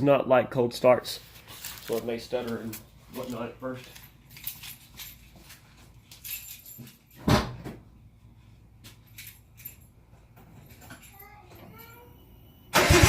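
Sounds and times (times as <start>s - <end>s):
keys jingling: 2.8s - 7.3s, 8.8s - 12.0s.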